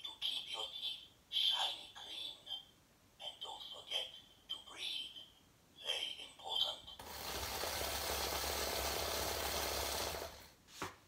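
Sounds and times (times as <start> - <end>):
alarm clock rattling buzz: 7.0 - 10.5.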